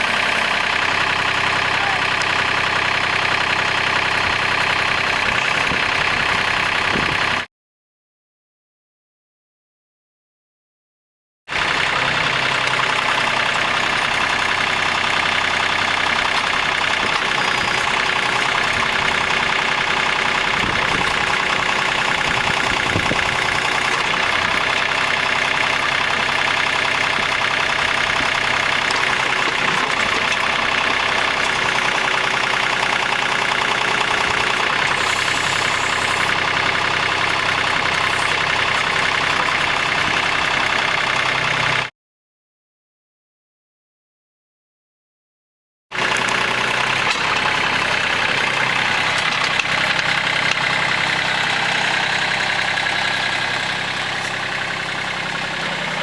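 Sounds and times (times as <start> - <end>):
tractor diesel engine running: 0.0 - 7.5, 11.5 - 41.9, 45.9 - 56.0
high hydraulic whine: 31.6 - 39.3.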